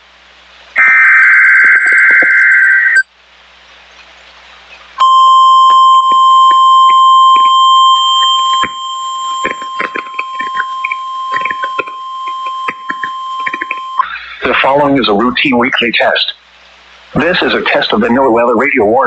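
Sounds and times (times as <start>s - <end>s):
steady warning alarm tone: 0.8s - 3.0s, 5.0s - 15.3s
crackling clicks: 5.6s - 14.1s.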